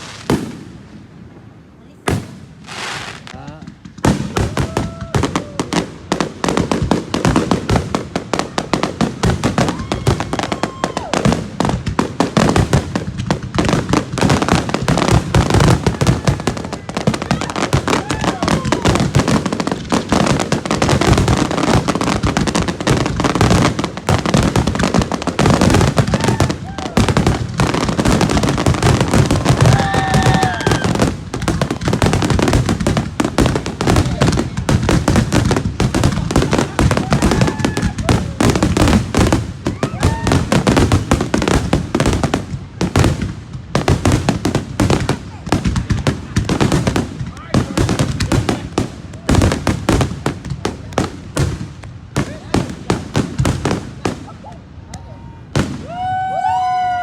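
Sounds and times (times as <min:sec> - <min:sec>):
fireworks bangs and crackles: 0:00.0 - 0:57.0.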